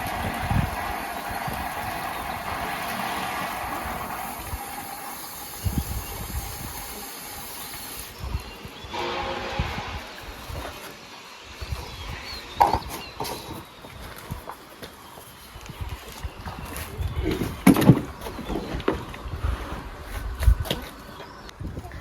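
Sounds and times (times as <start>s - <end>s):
steady hiss: 0.0s - 12.2s
wind buffeting microphone: 0.0s - 14.6s, 15.4s - 22.0s.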